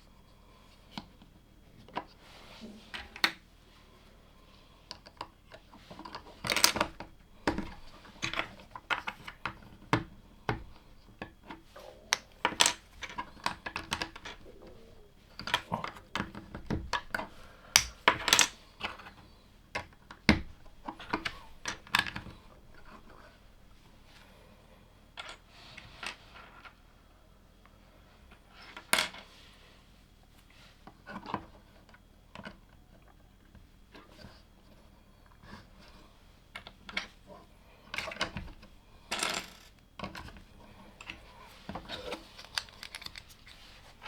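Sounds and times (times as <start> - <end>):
plastic bricks clicking together: 6.1 - 19.1, 41.8 - 43.7.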